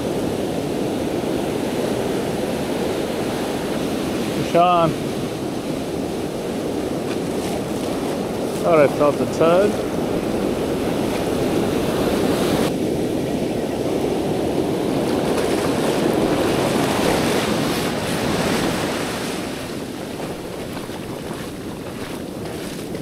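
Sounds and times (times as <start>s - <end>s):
ocean waves breaking: 0.0s - 23.0s.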